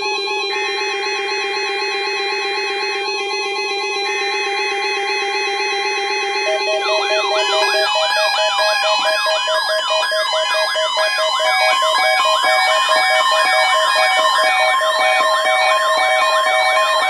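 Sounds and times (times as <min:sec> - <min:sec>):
steady electronic tones: 0:06.4 - 0:09.8
siren-like warbling sweeps: 0:06.4 - 0:11.1.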